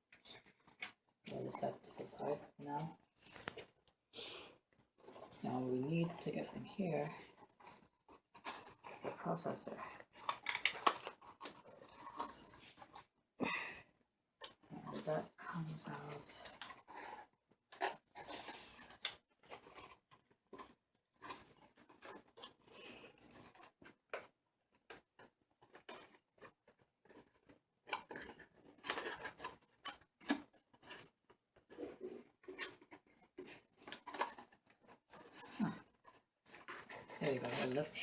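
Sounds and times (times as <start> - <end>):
cpu packaging clicks and rustles: 7.1 - 13.1, 15.8 - 38.0.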